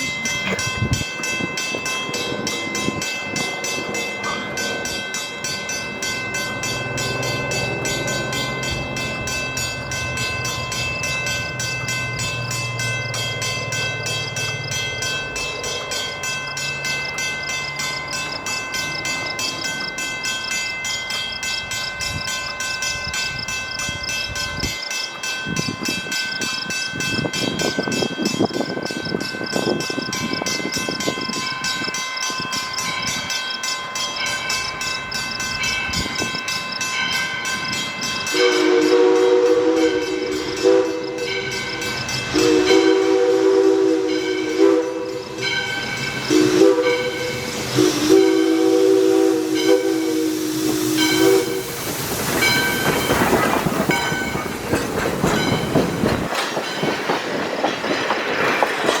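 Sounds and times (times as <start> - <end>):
train passing: 0.0 - 59.0
steam whistle chord: 38.3 - 51.8
steam hiss: 38.3 - 59.0.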